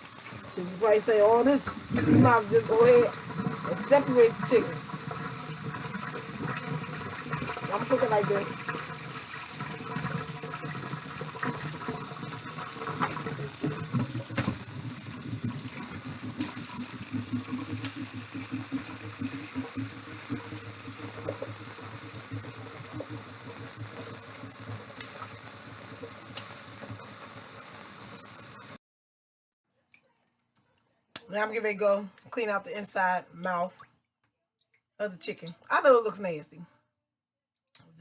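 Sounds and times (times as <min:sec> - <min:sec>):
tap running into sink: 0:01.6 - 0:28.3.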